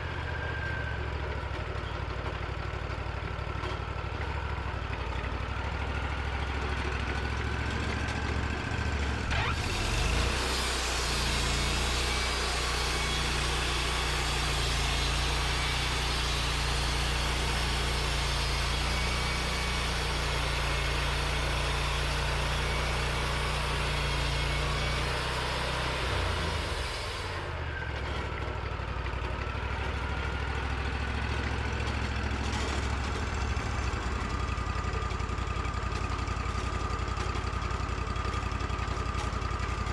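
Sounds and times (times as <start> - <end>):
sawmill engine running: 0.0 - 39.9
saw cutting log hiss: 9.3 - 19.8.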